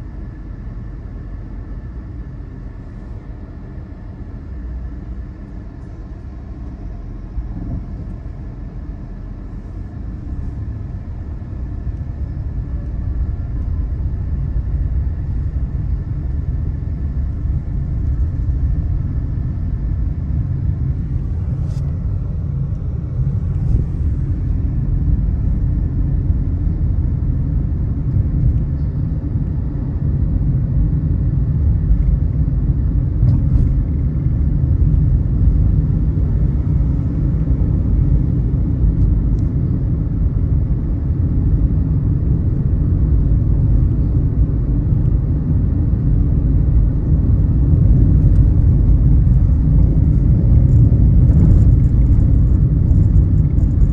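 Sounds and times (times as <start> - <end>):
car road and engine rumble: 0.0 - 53.9.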